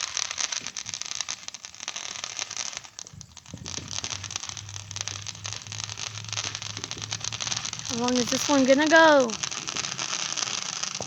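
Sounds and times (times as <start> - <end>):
fireworks crackling: 0.0 - 11.0
low steady hum: 3.6 - 9.4.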